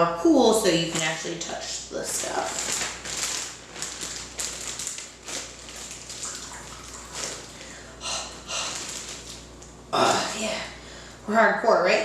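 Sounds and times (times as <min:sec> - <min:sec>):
short water splashes: 0:05.7 - 0:07.7.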